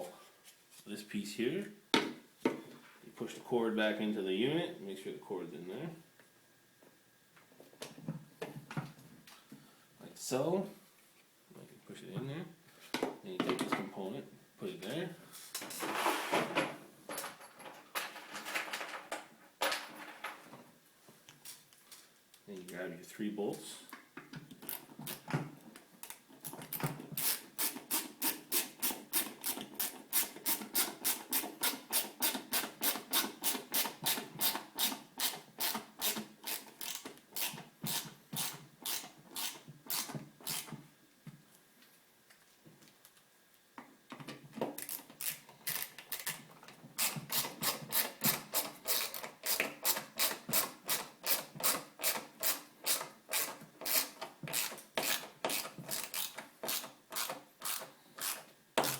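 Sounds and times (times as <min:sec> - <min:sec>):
hand ratchet clicking: 0:27.2 - 0:40.7, 0:44.8 - 0:46.4, 0:47.0 - 0:58.9.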